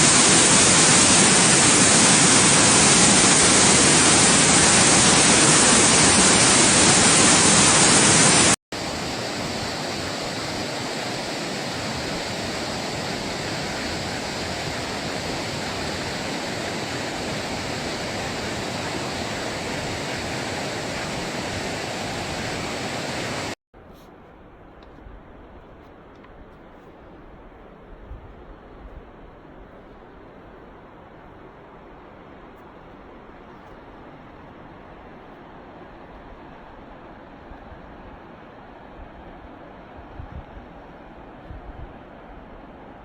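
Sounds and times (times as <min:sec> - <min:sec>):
rushing water: 0:00.0 - 0:23.6
waterfall rushing: 0:00.0 - 0:23.6.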